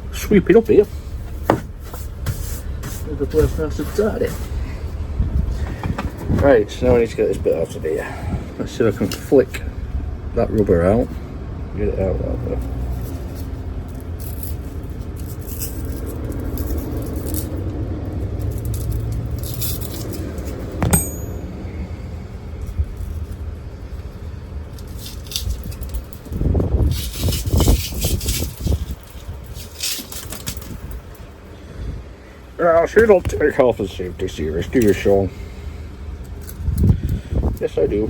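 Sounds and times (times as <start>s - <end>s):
steady low rumble: 0.0s - 26.9s
knocks and scrapes: 1.2s - 4.6s, 18.4s - 21.4s
rubber scraping and rustling: 1.2s - 4.6s, 24.9s - 31.0s
sharp metallic clink: 20.8s - 21.8s.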